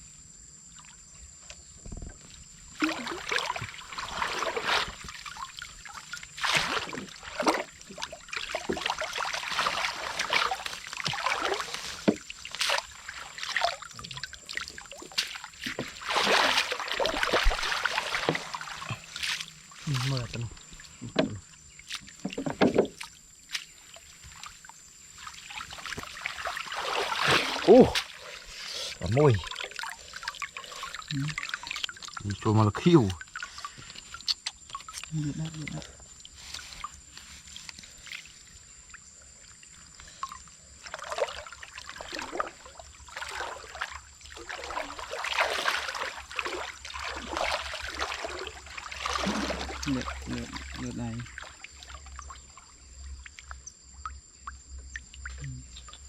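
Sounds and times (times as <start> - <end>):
water splashing and trickling: 0.6 - 56.0
person exclaiming: 27.7 - 28.0.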